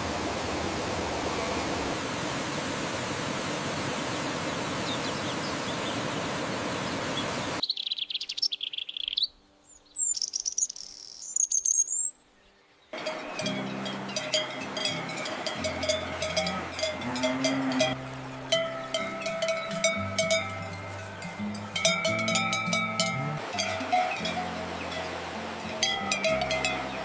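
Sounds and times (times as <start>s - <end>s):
small birds chirping: 4.0s - 16.8s
steady rushing hiss: 13.0s - 27.0s.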